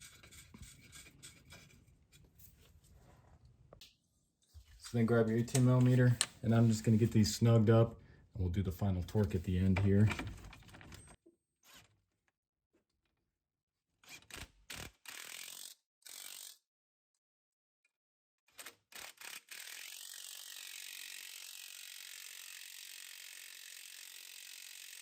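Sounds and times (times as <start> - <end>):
ratchet wrench clicking: 14.7 - 16.6, 18.9 - 25.0.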